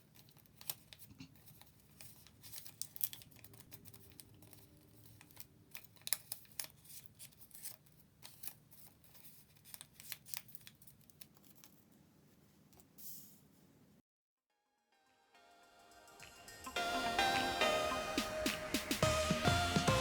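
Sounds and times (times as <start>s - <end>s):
paper being folded and creased: 0.0s - 13.4s.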